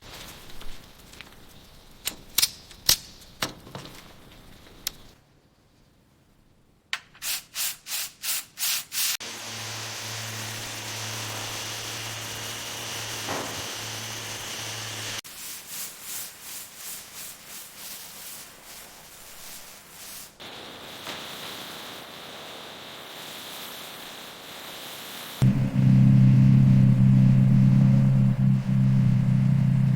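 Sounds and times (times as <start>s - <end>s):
scrubbing strokes on car surface: 15.2s - 20.4s
low hum: 25.4s - 29.9s.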